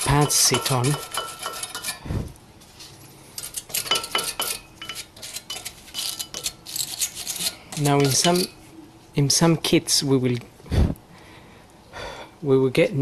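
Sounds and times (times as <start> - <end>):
metal tools clinking and scraping: 0.0 - 2.0, 3.4 - 8.6.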